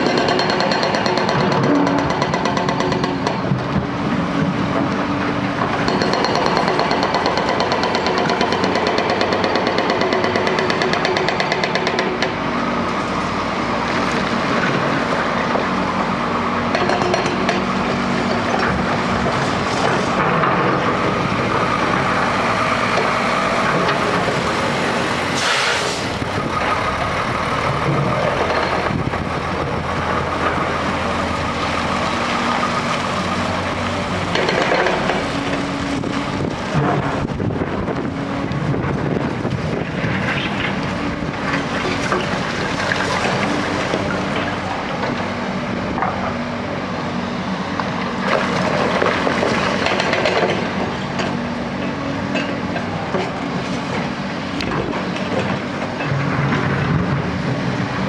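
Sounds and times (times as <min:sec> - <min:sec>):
hydraulic breaker hammering: 0:00.0 - 0:03.6
excavator diesel engines running: 0:00.0 - 0:58.0.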